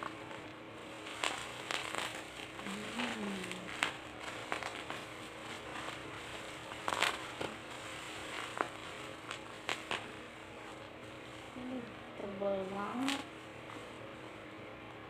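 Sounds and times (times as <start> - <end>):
packaging crinkling and clicking: 0.0 - 11.3
faint steady hum: 0.0 - 15.0.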